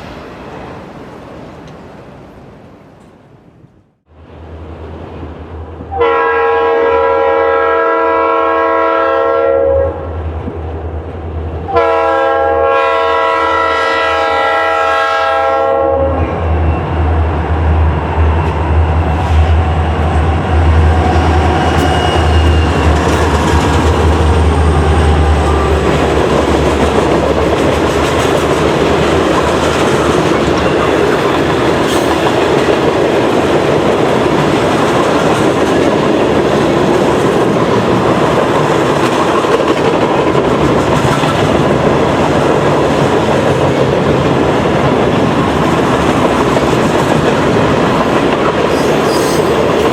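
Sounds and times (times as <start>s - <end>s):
train air horn blasts: 5.9s - 10.2s, 11.7s - 16.5s
locomotive rumble: 16.1s - 49.9s.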